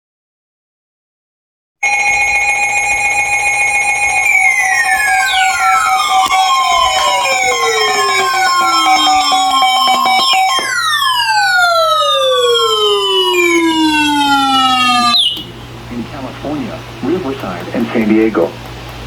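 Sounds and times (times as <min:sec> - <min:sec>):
electronic alert held tones: 0:01.8 - 0:15.5
falling siren-like sweeps: 0:01.8 - 0:15.6.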